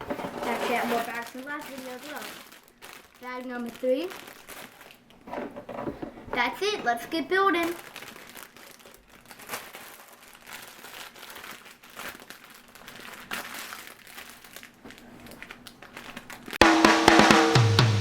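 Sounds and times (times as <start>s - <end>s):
plastic bags crinkling: 0.0s - 16.6s
loud music with guitar and drums: 16.6s - 18.0s.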